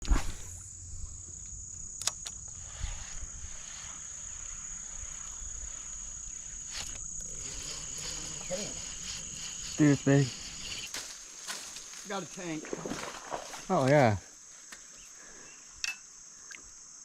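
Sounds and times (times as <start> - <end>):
high-pitched insect trill: 0.1 - 17.0
sharp clicks: 2.0 - 2.5.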